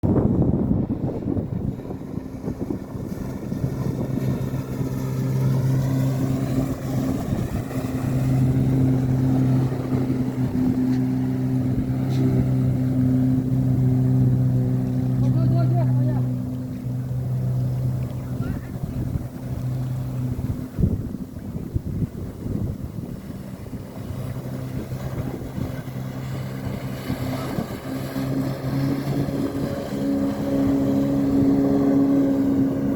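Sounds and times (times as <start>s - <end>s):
wind noise: 0.0s - 14.9s, 18.3s - 32.9s
jet ski engine running: 0.0s - 32.9s
water wash: 0.0s - 32.9s.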